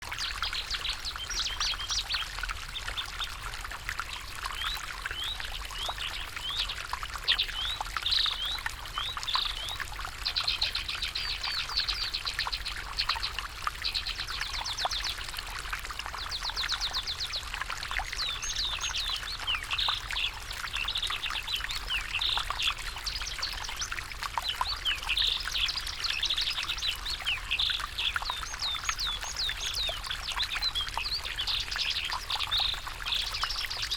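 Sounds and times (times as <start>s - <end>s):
stream water flowing: 0.0s - 33.9s.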